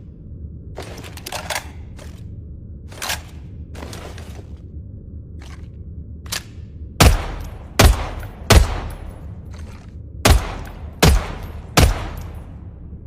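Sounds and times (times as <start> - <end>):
low hum: 0.0 - 13.0
gunshots with echo: 7.0 - 9.2, 10.3 - 12.6.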